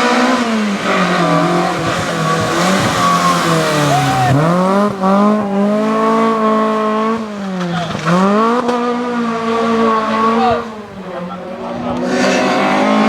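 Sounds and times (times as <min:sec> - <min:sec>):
rally car engine revving: 0:00.0 - 0:13.0.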